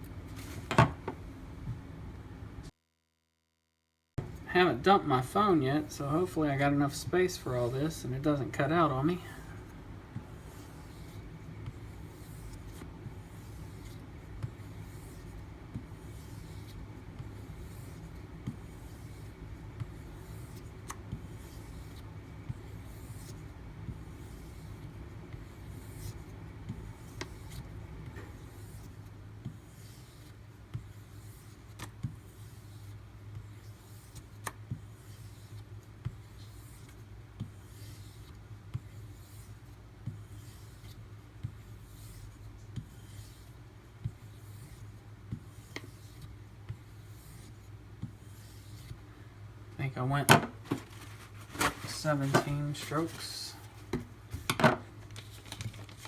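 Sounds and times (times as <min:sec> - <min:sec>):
steady low hum: 0:04.2 - 0:34.1.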